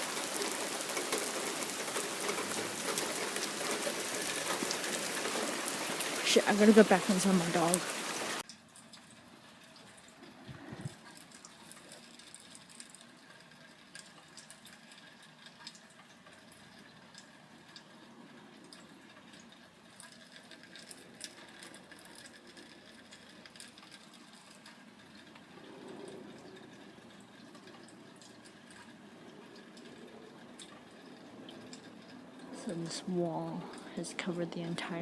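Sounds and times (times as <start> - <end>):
light rain pattering: 0.0 - 35.0
sharp drip ticks: 8.4 - 10.3, 11.0 - 35.0.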